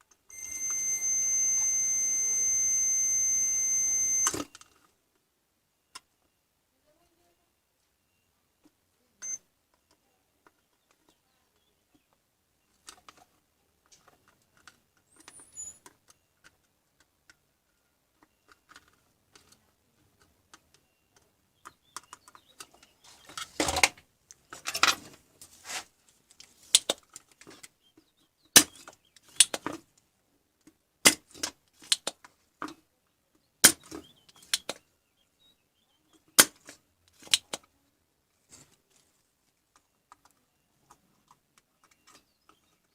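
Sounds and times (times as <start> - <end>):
sharp clicks and knocks: 28.4 - 29.8, 30.6 - 34.8.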